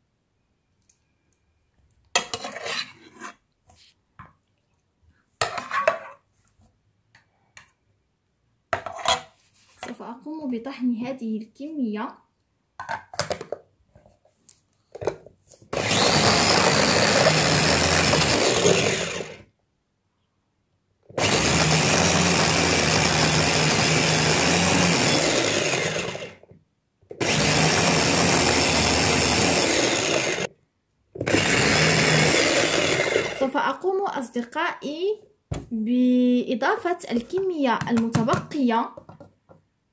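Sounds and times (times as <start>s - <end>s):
electric blender whirring: 15.7s - 19.5s, 21.2s - 26.4s, 27.2s - 30.5s, 31.2s - 33.4s.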